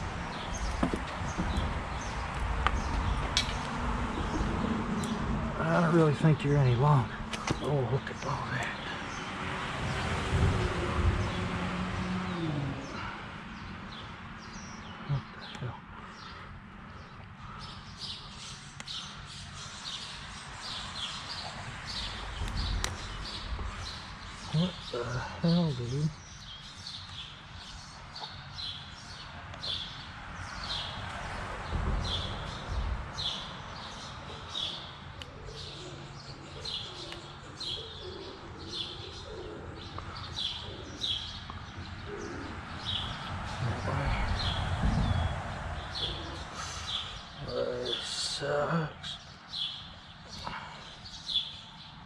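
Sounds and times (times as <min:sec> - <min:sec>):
outdoor background noise: 0:00.0 - 0:52.0.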